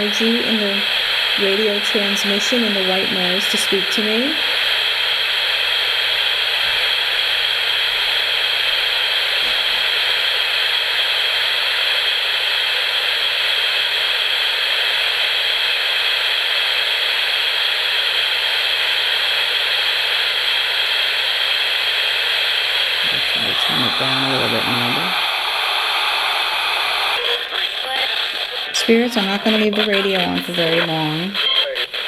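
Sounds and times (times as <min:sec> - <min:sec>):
radio static hiss: 0:00.0 - 0:32.0.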